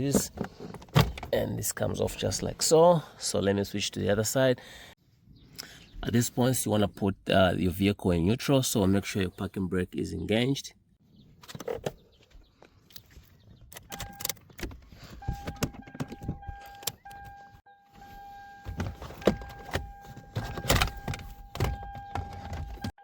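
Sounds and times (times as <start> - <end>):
gear shifter clicks and knocks: 0.0 - 1.5, 13.4 - 17.5, 18.6 - 22.9
car electronic warning tone: 13.9 - 14.3, 15.2 - 23.0.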